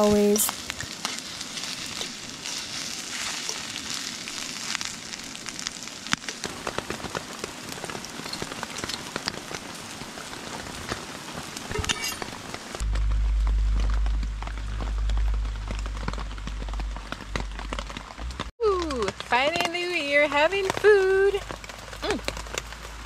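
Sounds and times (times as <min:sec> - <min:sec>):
eggs sizzling in a pan: 0:00.0 - 0:10.9.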